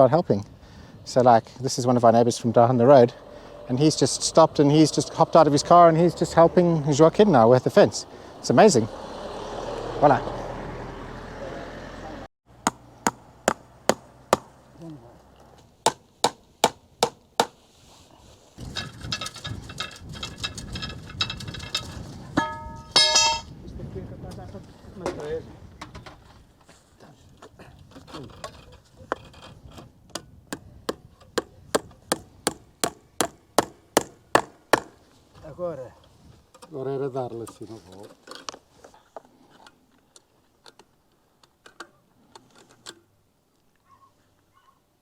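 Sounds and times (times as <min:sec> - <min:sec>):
hammer strikes: 0:12.6 - 0:14.5, 0:22.4 - 0:23.5
hammer blows: 0:22.4 - 0:23.5.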